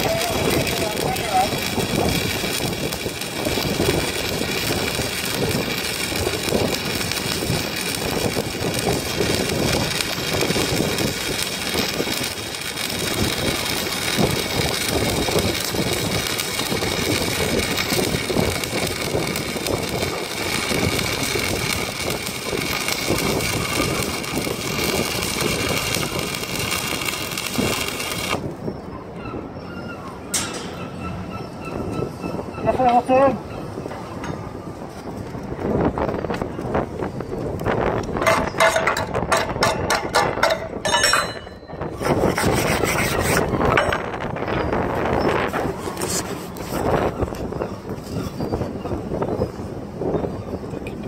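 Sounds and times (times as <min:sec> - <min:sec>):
welding arc crackling: 0:00.0 - 0:28.6, 0:35.2 - 0:49.1.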